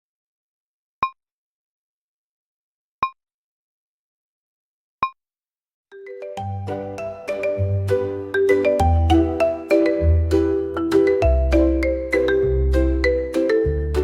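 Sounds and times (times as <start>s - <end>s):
marimba-like music: 6.0s - 14.0s.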